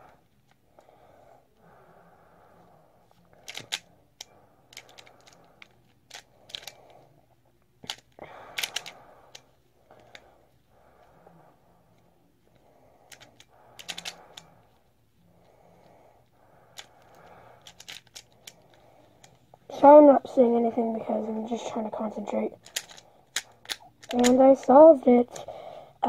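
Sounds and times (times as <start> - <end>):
puzzle pieces clicking: 3.4 - 3.9, 4.7 - 6.8, 7.8 - 10.2, 13.1 - 14.4, 16.8 - 19.4, 22.5 - 24.5.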